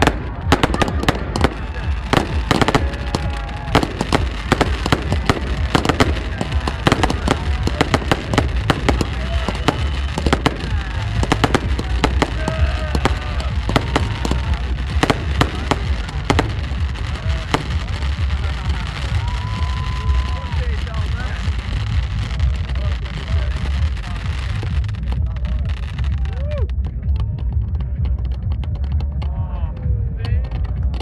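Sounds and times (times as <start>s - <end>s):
fireworks bangs and crackles: 0.0s - 31.0s
low rumble: 0.0s - 31.0s.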